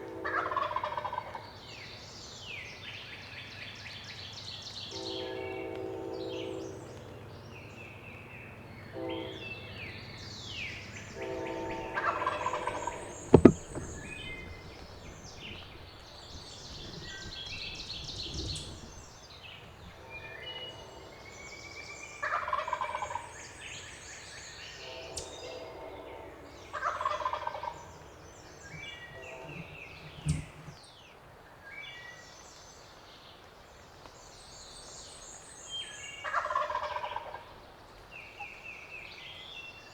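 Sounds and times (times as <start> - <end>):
songbirds chirping: 0.0 - 39.9
turkey gobbling: 11.6 - 15.8, 22.2 - 23.2, 26.7 - 28.1, 36.2 - 37.4
sharp knocks: 11.9 - 15.9.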